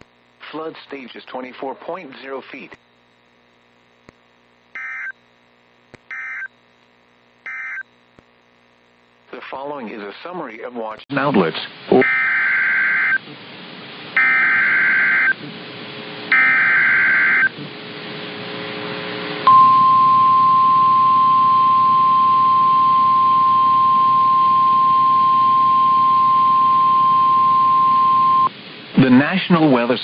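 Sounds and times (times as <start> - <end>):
steady warning alarm tone: 4.8 - 5.2, 6.1 - 6.5, 7.5 - 7.8, 12.0 - 13.2, 14.2 - 15.4, 16.3 - 17.6, 19.5 - 28.5
digital header bursts: 14.2 - 15.4, 16.3 - 17.6.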